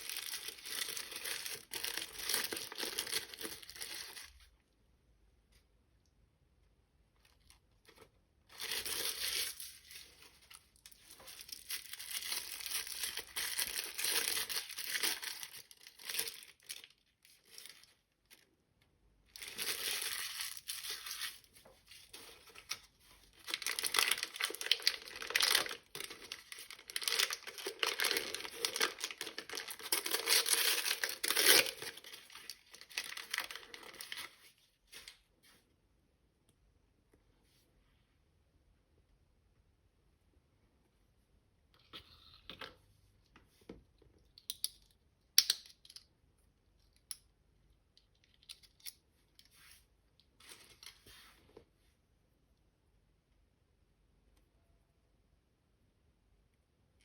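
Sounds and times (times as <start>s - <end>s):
plastic packaging crinkling and tearing: 0.0s - 4.5s, 7.2s - 18.5s, 19.3s - 35.0s.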